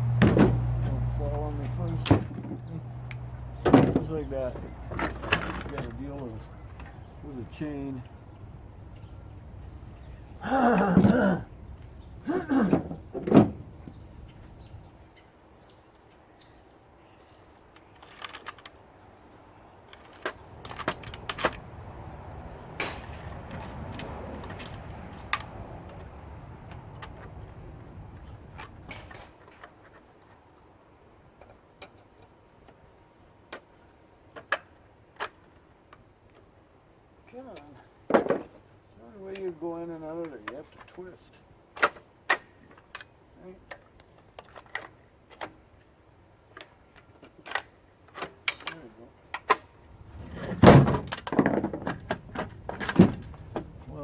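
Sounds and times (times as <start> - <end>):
faint birds chirping: 0.0 - 50.1
creaks and squeaks: 17.9 - 18.7.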